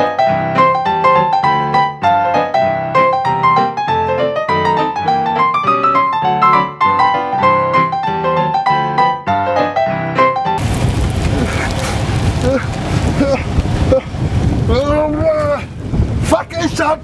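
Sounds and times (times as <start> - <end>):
piano music: 0.0 - 10.6.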